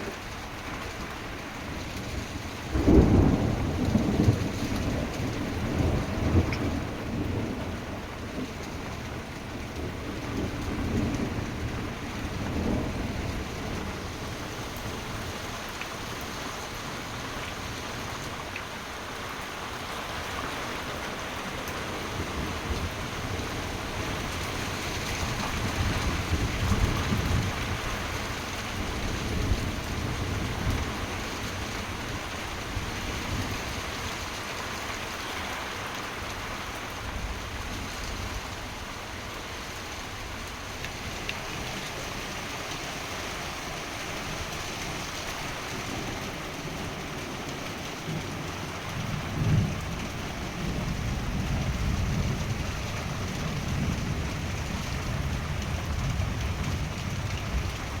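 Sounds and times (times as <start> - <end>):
heavy rain pouring: 0.0 - 58.0
thunder rolling: 2.7 - 8.5.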